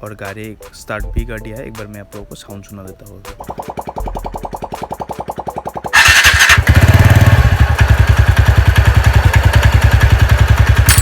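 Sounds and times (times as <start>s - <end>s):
scooter engine running: 5.9s - 11.0s.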